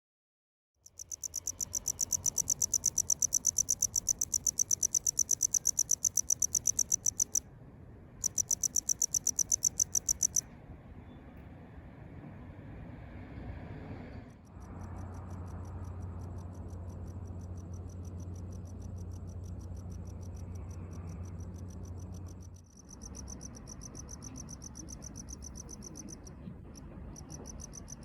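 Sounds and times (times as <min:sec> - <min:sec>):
cricket chirping: 0:00.8 - 0:07.4, 0:08.2 - 0:10.4, 0:14.5 - 0:28.0.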